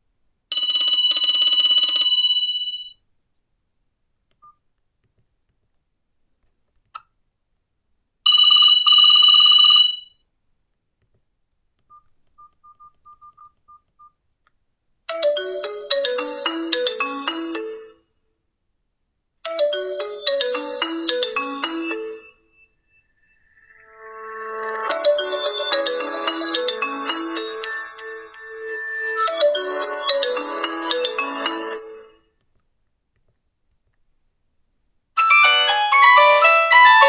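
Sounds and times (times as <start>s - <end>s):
buzzy phone ringtone tone: 0.5s - 3.0s, 8.3s - 10.2s, 19.5s - 32.2s
electronic ringtone melody: 15.1s - 18.0s, 19.5s - 32.2s, 35.2s - 37.0s.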